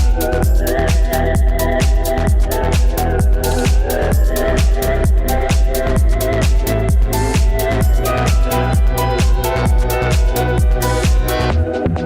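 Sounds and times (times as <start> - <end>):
electronic dance music: 0.0 - 12.0
steady kick drum: 0.0 - 12.0.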